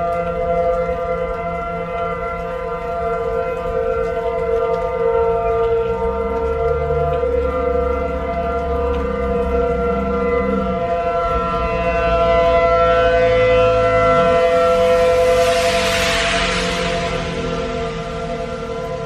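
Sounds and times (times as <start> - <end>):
warning siren steady tone: 0.0 - 19.0
rush of noise: 10.9 - 19.0.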